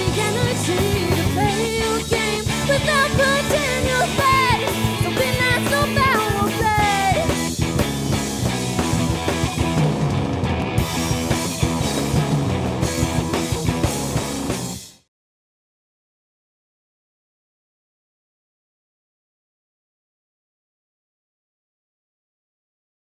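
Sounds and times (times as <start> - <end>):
sliding lead guitar melody: 0.0 - 14.7
rock band playing live: 0.0 - 15.0.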